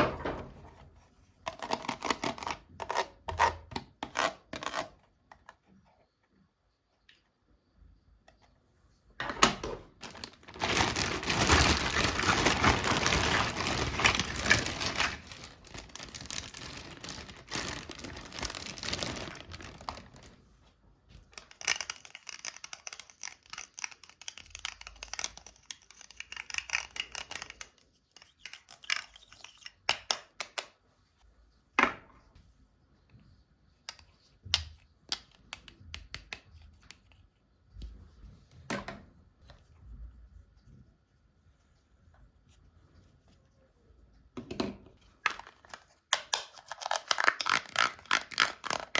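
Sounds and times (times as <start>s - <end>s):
packaging crinkling and tearing: 9.9s - 20.4s, 21.3s - 27.7s, 45.2s - 48.9s
clicks and taps: 33.9s - 37.2s.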